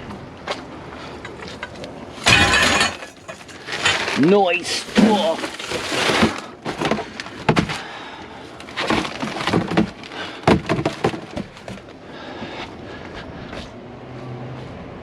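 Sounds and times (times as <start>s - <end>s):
scrap metal clattering: 1.3s - 7.8s.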